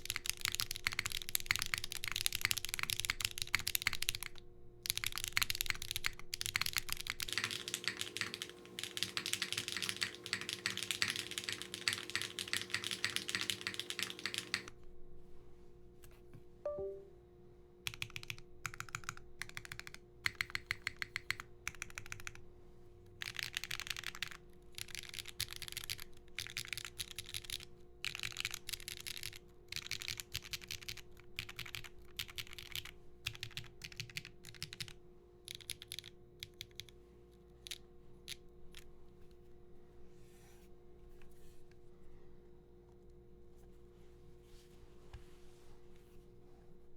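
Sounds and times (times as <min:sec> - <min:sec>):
mechanical keyboard typing: 0:00.0 - 0:14.7, 0:17.8 - 0:22.4, 0:23.2 - 0:36.9.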